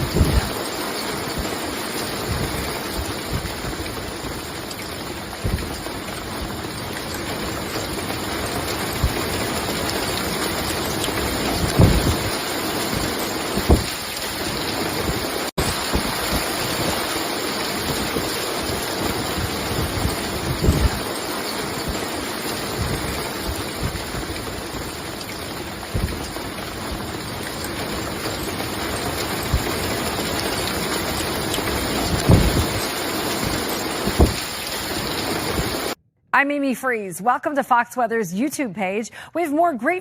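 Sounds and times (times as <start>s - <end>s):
heavy rain and hail: 0.0s - 36.0s
wind gusts thumping microphone: 0.0s - 36.0s.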